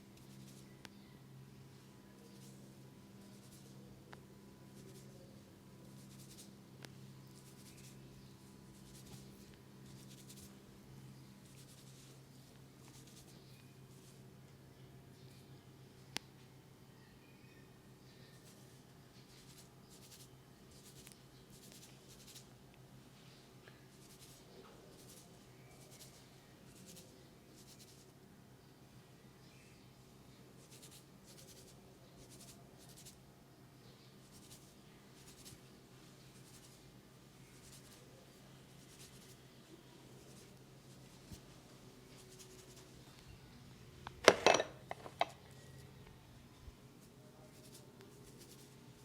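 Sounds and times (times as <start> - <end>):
fingers rubbing through hair: 0.2 - 0.7, 2.2 - 3.8, 4.7 - 5.2, 5.9 - 6.5, 7.2 - 10.6, 11.4 - 12.2, 12.8 - 14.2, 18.3 - 22.5, 23.9 - 28.1, 30.6 - 33.2, 34.2 - 36.8, 37.4 - 39.5, 40.2 - 43.0, 47.0 - 48.9
hands rubbing skin: 7.3 - 8.0, 8.8 - 10.5, 37.5 - 38.0, 38.8 - 39.4, 40.2 - 43.0, 47.5 - 48.8.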